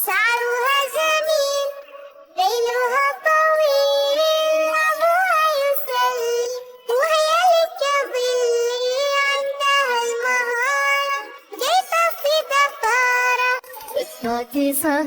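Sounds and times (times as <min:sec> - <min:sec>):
child-like voice singing: 0:00.0 - 0:15.0.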